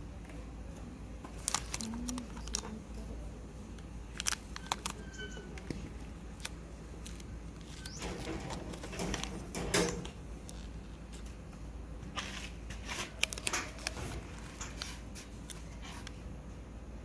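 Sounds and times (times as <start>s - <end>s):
plastic film crinkling: 1.3s - 3.0s, 3.7s - 5.4s, 12.2s - 16.2s.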